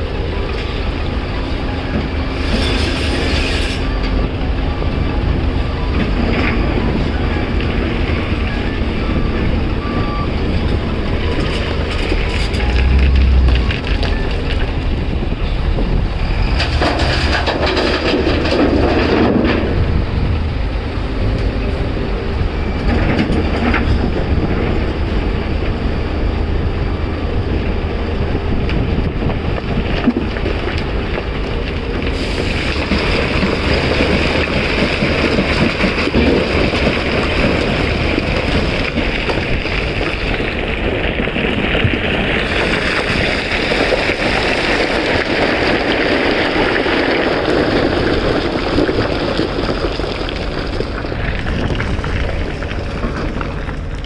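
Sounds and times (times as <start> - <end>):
hydraulics clattering: 0.0 - 24.9
excavator diesel engine running: 0.0 - 54.0.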